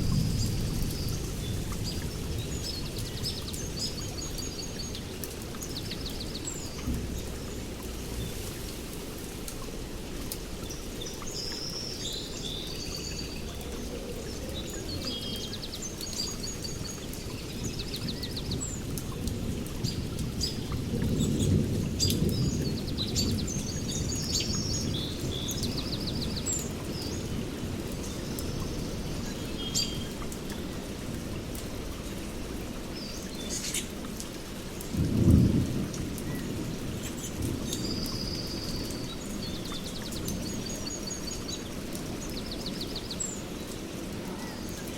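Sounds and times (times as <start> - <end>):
thunder rolling: 0.0 - 3.0, 34.9 - 37.7
steady rain: 0.0 - 44.9.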